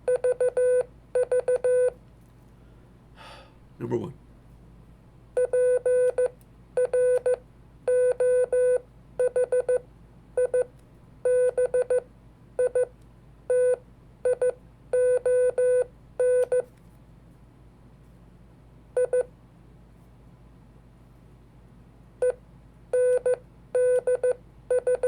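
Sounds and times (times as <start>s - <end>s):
morse code beeps: 23.0s - 25.0s.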